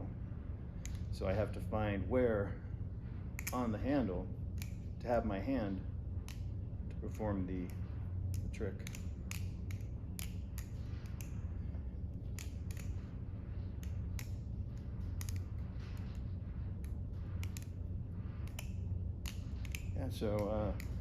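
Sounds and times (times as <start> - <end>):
low steady hum: 0.0 - 21.0
butterfly knife clicking: 3.4 - 3.6, 4.6 - 4.8, 7.7 - 11.4, 12.2 - 13.1, 13.8 - 16.2, 16.8 - 21.0.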